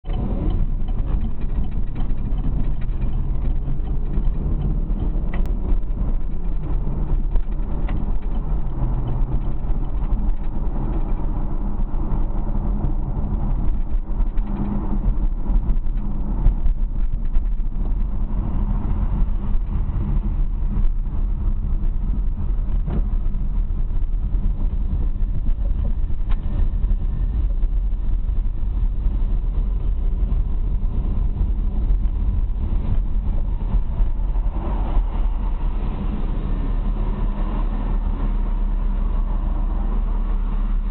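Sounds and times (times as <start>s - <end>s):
car engine rumbling: 0.0s - 40.9s.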